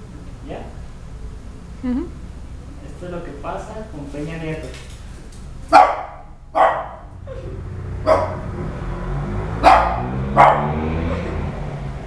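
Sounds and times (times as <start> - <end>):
small dog yapping: 5.7 - 7.4, 8.1 - 8.4.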